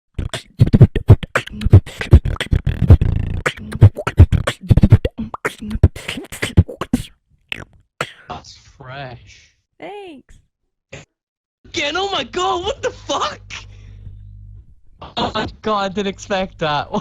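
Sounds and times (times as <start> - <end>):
hummed bass tone: 0.2 - 5.9
person beatboxing: 0.2 - 8.4.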